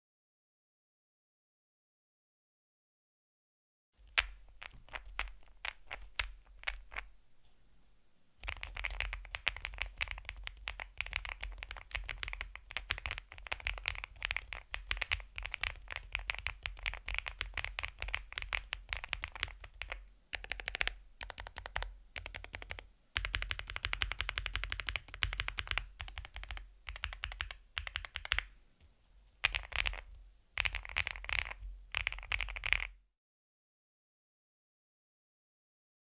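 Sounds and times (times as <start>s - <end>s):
mechanical keyboard typing: 8.4s - 28.5s, 29.4s - 33.0s.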